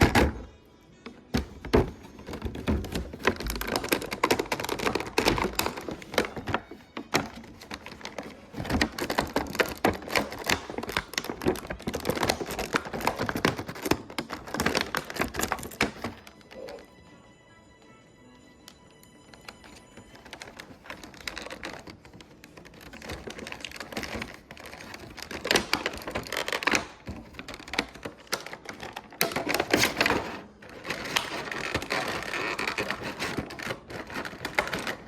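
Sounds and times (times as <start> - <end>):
packaging crackling being opened: 1.7 - 16.8, 19.5 - 35.0.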